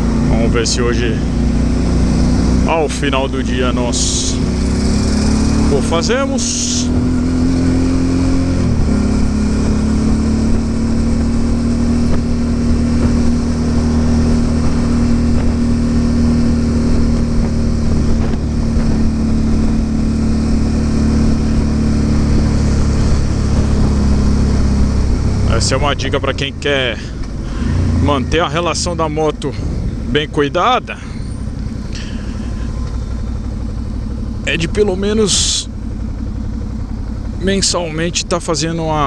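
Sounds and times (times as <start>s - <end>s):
motorcycle engine running steadily: 0.0s - 39.0s
low wind rumble on microphone: 6.8s - 28.4s.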